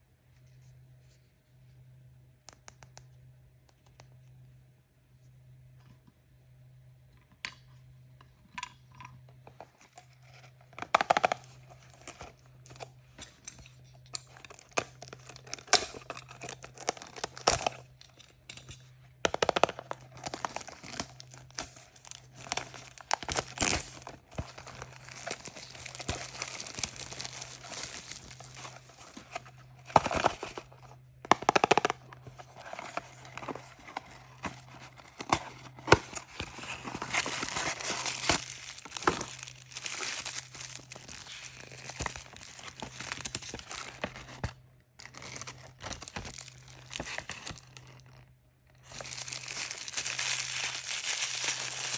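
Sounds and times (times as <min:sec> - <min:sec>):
faint low hum: 0:00.0 - 0:50.8
plastic packaging crinkling: 0:13.6 - 0:51.9
plastic ripping: 0:19.3 - 0:30.7, 0:31.3 - 0:44.5, 0:48.8 - 0:51.9.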